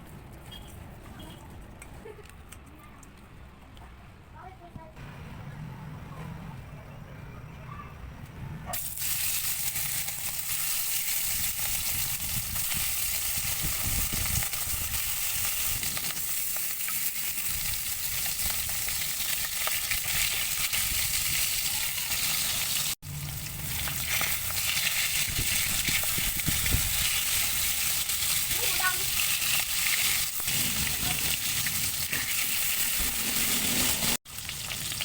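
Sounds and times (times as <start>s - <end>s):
food sizzling in hot oil: 8.7s - 35.0s.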